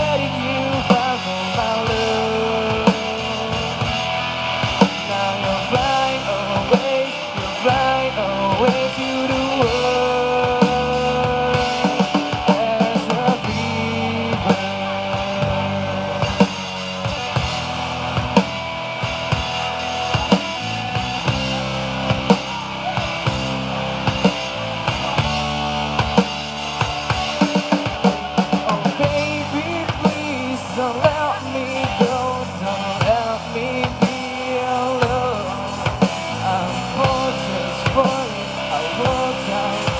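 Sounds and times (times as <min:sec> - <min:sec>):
drum kit beat: 0:00.0 - 0:39.9
live rock band playing: 0:00.0 - 0:39.9
melodic lead line: 0:00.0 - 0:39.9.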